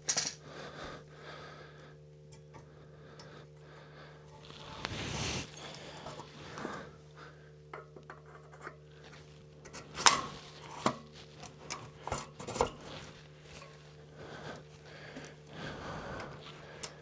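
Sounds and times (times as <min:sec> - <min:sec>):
tools and metal parts clicking: 0:00.0 - 0:00.4
faint steady hum: 0:00.0 - 0:17.0.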